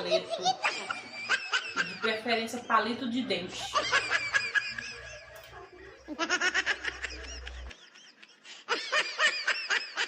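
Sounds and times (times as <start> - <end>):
person giggling: 3.6 - 10.0.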